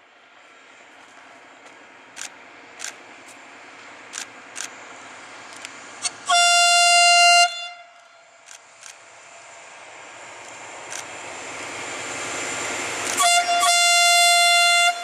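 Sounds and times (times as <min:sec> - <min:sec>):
train running noise: 0:00.0 - 0:15.0
train horn blast: 0:06.0 - 0:08.4, 0:13.2 - 0:15.0
sharp clicks: 0:08.4 - 0:09.0, 0:13.0 - 0:13.2.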